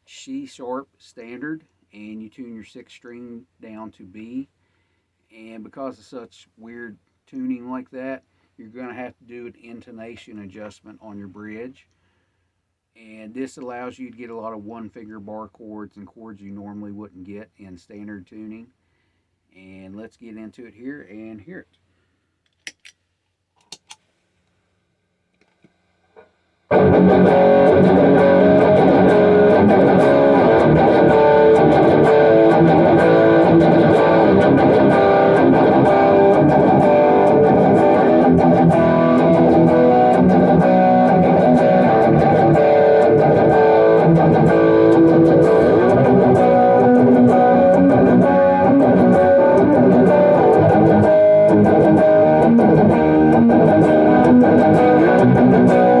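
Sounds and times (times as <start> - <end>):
electric guitar playing: 26.7 - 56.0.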